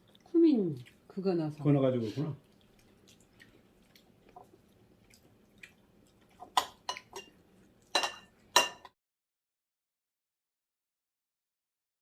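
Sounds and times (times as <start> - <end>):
spoon clinking against dish: 6.5 - 9.0.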